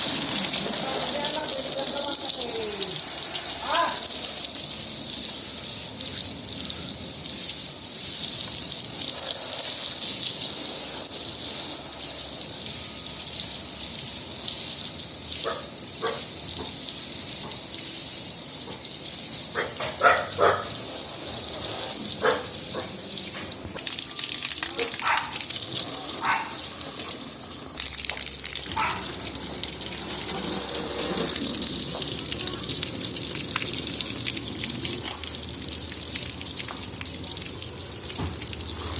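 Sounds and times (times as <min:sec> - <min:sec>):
rushing water: 0:00.0 - 0:05.7, 0:19.5 - 0:38.9
dog barking: 0:15.4 - 0:16.3, 0:19.6 - 0:20.8, 0:22.2 - 0:23.0, 0:24.8 - 0:25.4, 0:26.1 - 0:26.6, 0:28.8 - 0:29.1.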